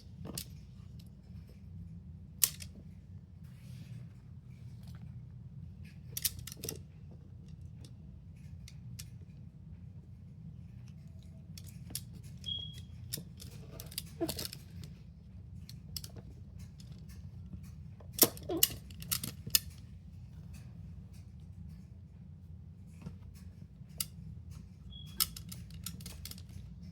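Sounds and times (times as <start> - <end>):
steady low hum: 0.0 - 26.9
fidget toys clicking and clattering: 6.1 - 9.3, 10.9 - 21.8, 24.9 - 26.9.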